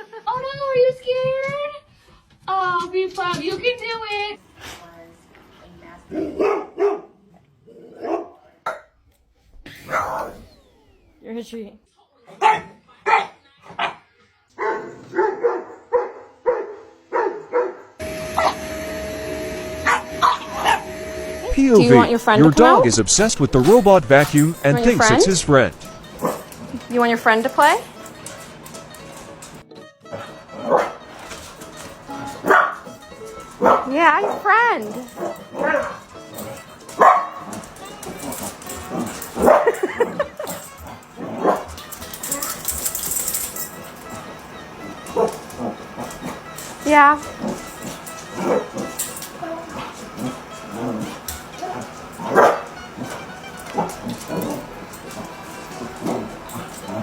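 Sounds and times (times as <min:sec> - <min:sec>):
dog barking: 0:06.1 - 0:07.2, 0:07.8 - 0:09.0, 0:09.8 - 0:10.4, 0:12.3 - 0:14.0, 0:14.6 - 0:18.6, 0:19.8 - 0:20.9, 0:26.2 - 0:26.5, 0:30.6 - 0:31.0, 0:32.4 - 0:33.0, 0:33.6 - 0:36.0, 0:37.0 - 0:37.5, 0:39.3 - 0:40.2, 0:41.3 - 0:41.7, 0:45.1 - 0:45.5, 0:47.5 - 0:50.0, 0:51.6 - 0:54.6.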